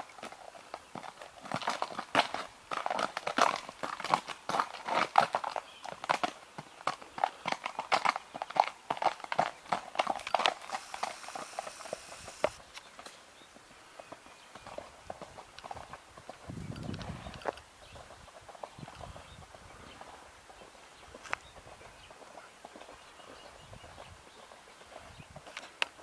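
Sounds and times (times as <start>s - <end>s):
horse hooves clip-clopping: 0.0s - 26.0s.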